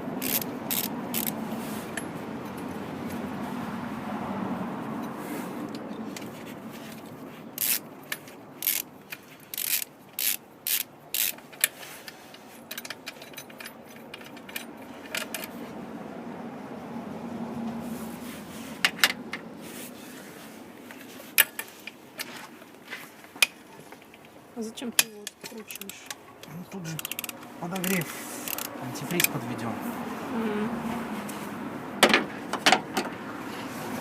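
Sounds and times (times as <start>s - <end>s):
hand tools clicking on metal: 0.2s - 1.4s, 7.6s - 15.5s, 24.9s - 29.4s.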